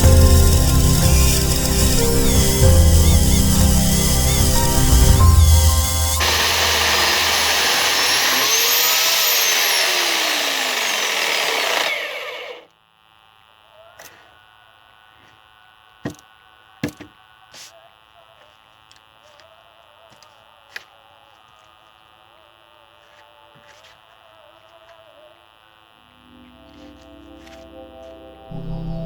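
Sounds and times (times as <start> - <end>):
low hum: 0.0 - 12.5
electric chainsaw cutting: 0.0 - 12.7.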